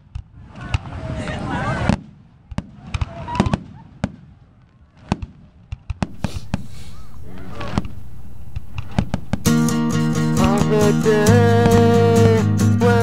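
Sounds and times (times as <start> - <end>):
fireworks bangs: 1.8 - 12.6
fireworks hiss: 6.0 - 11.1
faint voices of onlookers: 6.1 - 11.3.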